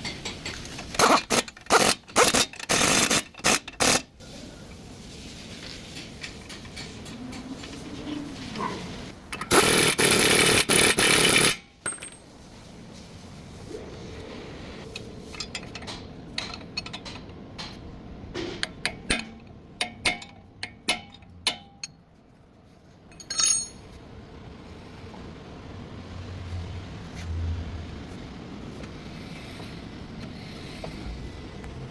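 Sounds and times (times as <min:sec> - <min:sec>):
metal tools clinking: 0:11.8 - 0:12.3, 0:15.2 - 0:17.8, 0:23.1 - 0:24.0.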